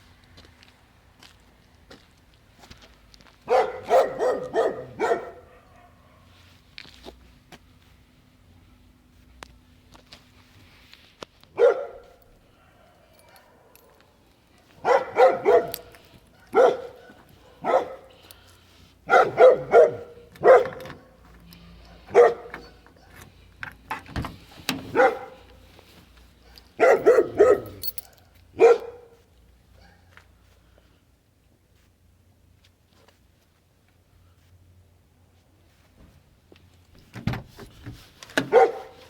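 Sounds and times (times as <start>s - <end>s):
dog barking: 3.4s - 6.4s, 11.6s - 14.0s, 14.8s - 18.1s, 19.1s - 21.1s, 21.8s - 23.2s, 24.9s - 25.5s, 26.4s - 29.2s, 29.8s - 30.1s, 38.4s - 39.0s.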